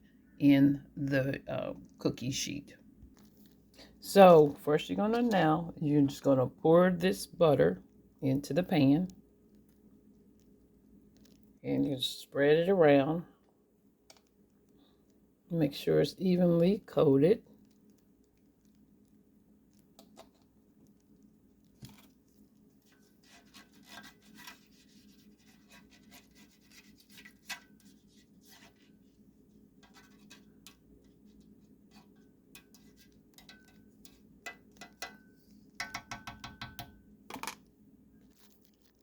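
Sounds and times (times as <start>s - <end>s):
low steady hum: 0.0s - 39.0s
utensils scraping and tapping: 22.8s - 29.1s, 29.8s - 37.6s.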